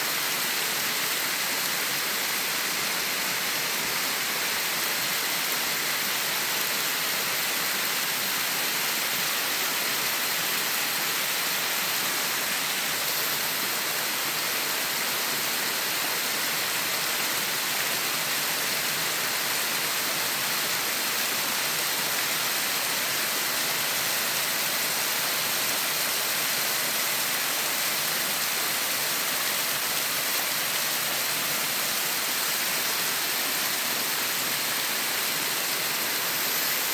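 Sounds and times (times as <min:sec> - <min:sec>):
waterfall rushing: 0:18.4 - 0:36.9.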